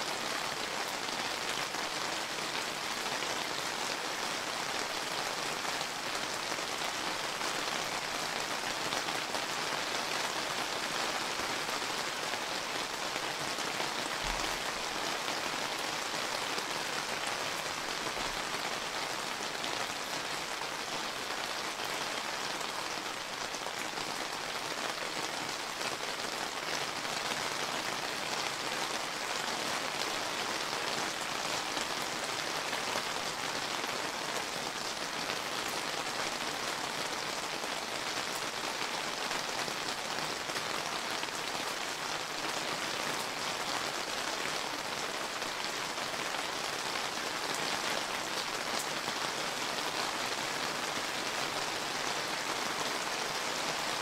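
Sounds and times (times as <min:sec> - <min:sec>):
rain pattering: 0:00.0 - 0:54.0.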